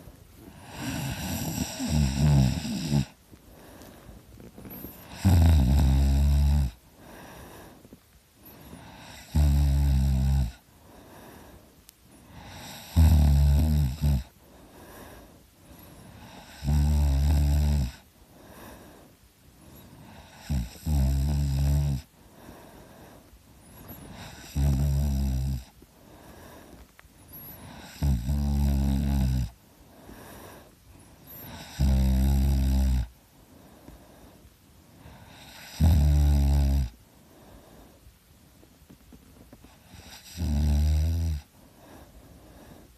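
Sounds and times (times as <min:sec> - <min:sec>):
person snoring heavily: 0:00.0 - 0:03.8, 0:04.7 - 0:07.8, 0:08.6 - 0:11.5, 0:12.2 - 0:15.3, 0:16.0 - 0:19.0, 0:19.9 - 0:23.1, 0:23.8 - 0:26.7, 0:27.4 - 0:33.1, 0:35.0 - 0:37.0, 0:39.7 - 0:41.5.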